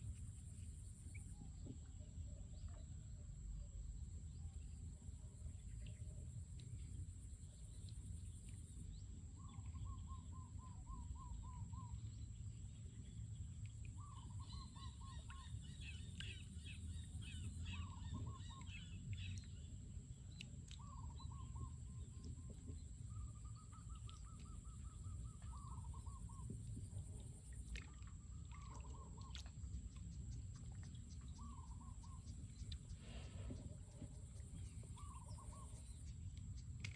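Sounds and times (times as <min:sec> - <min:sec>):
birds calling: 0:31.4 - 0:36.1.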